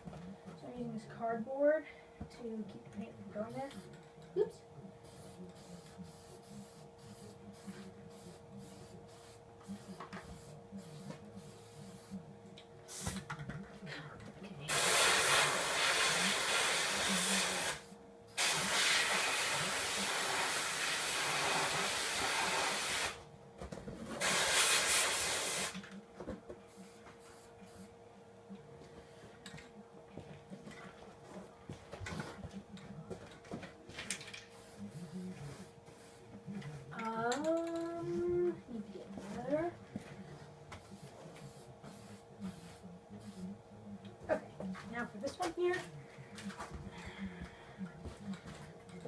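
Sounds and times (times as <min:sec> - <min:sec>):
aerosol spray can hissing: 0:14.7 - 0:23.2, 0:24.2 - 0:25.8.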